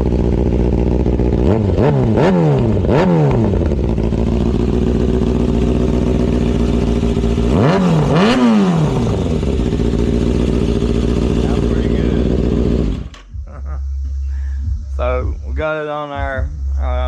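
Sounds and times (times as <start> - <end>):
motorcycle throttle blips: 0.0 - 13.4
motorcycle engine idling: 0.0 - 13.7.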